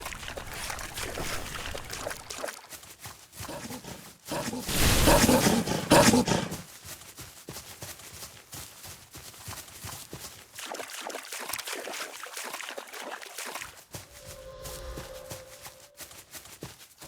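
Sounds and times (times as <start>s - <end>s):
rough animal-like growl: 3.5s - 6.6s.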